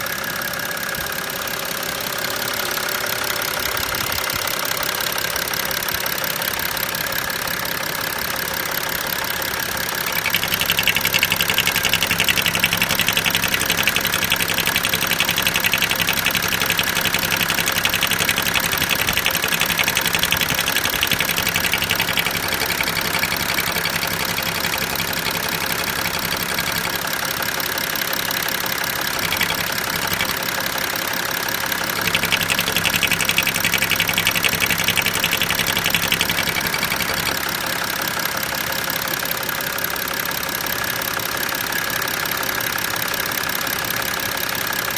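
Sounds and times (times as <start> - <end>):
diesel engine idling: 0.0 - 40.4
rapid high-pitched buzz: 10.1 - 25.0, 32.0 - 37.3.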